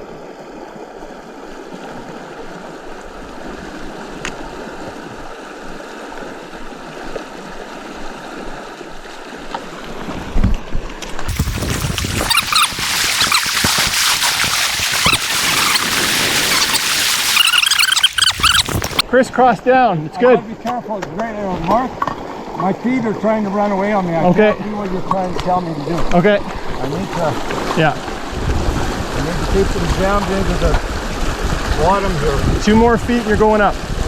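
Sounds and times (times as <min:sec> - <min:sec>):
creek water rushing: 0:11.3 - 0:19.0.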